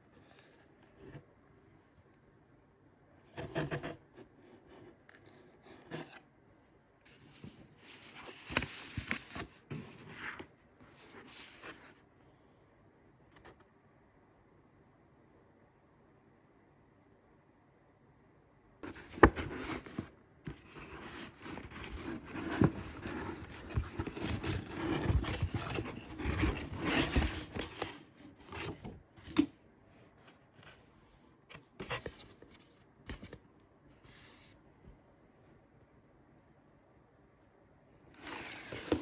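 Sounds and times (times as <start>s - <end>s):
packaging tearing and rustling: 20.8s - 28.8s.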